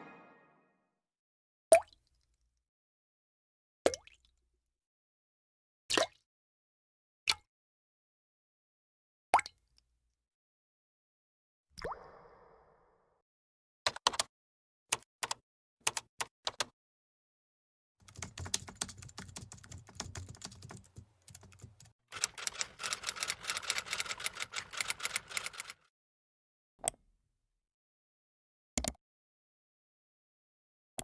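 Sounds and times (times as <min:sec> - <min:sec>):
keyboard typing: 0:14.9 - 0:16.7, 0:18.0 - 0:25.9
computer mouse click: 0:28.8 - 0:29.0.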